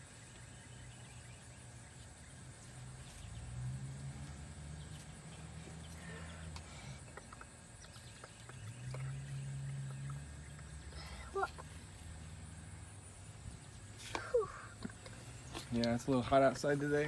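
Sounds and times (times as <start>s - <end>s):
low steady hum: 0.0s - 17.0s
toy vehicles clicking in sand: 13.8s - 17.0s.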